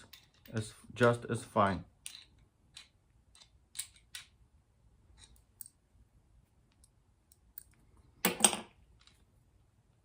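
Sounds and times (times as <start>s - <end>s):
metal parts clicking: 0.0s - 4.4s, 5.1s - 5.8s, 6.8s - 9.3s.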